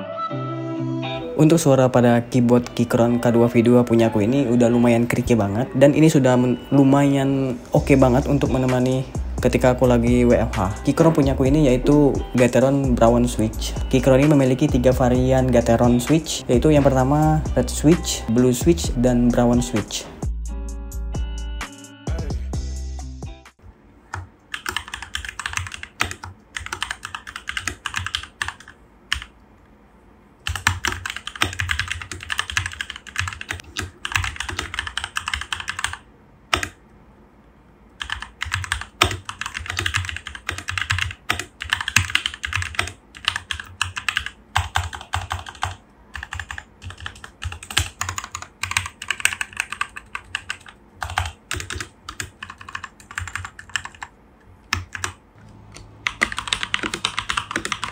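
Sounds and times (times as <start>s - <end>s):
mechanical keyboard typing: 24.1s - 29.3s, 30.4s - 36.8s, 38.0s - 54.1s, 54.7s - 57.9s.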